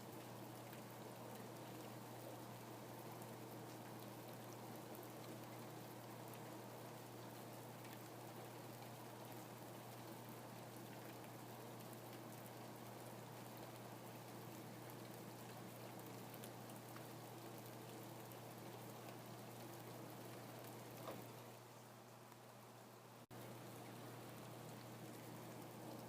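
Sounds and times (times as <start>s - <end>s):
faint steady rain: 0.0s - 26.0s
low steady hum: 0.0s - 26.0s.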